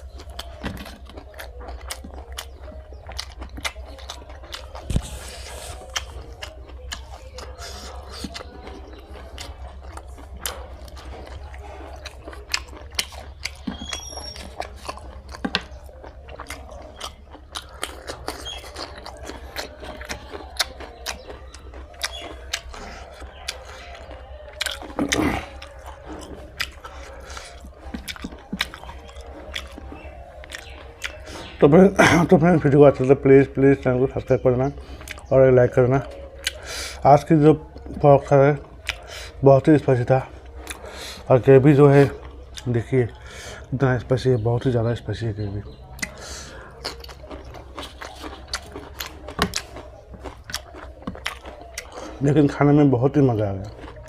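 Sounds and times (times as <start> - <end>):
close chewing: 0.0 - 54.0
wet mouth clicks: 0.1 - 31.6, 38.7 - 39.4, 45.7 - 52.2.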